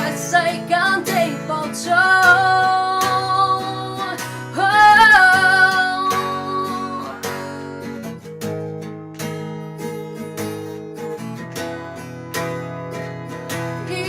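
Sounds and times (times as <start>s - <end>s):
woman singing long notes: 0.0s - 7.2s
acoustic guitar strumming: 0.0s - 14.0s.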